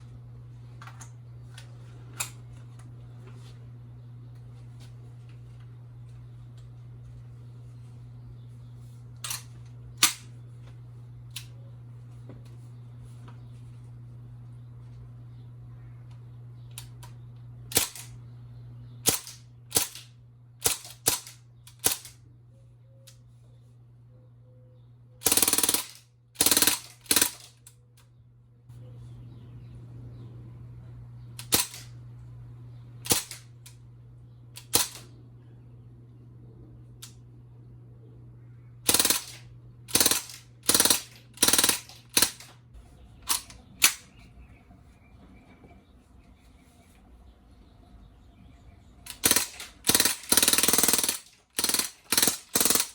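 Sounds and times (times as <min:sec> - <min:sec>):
low hum: 0:00.0 - 0:52.9
bb machine gun firing: 0:09.2 - 0:10.3, 0:17.7 - 0:18.2, 0:19.0 - 0:22.2, 0:25.2 - 0:27.7, 0:31.4 - 0:32.0, 0:33.0 - 0:33.5, 0:34.6 - 0:35.1, 0:38.8 - 0:42.5, 0:49.1 - 0:52.9.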